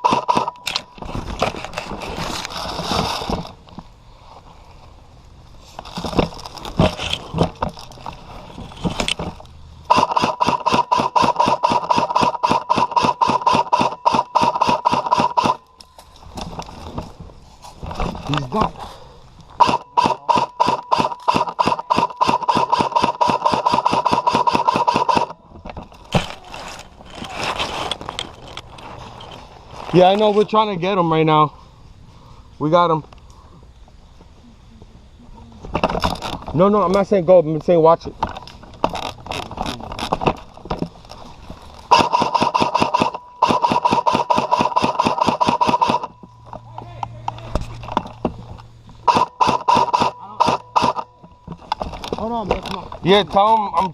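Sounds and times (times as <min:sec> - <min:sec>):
airsoft gun rapid firing: 0:00.0 - 0:00.5, 0:09.9 - 0:15.6, 0:19.6 - 0:25.3, 0:41.9 - 0:46.1, 0:49.1 - 0:51.0
steady whine: 0:00.0 - 0:53.9
sharp crack: 0:41.9 - 0:46.2.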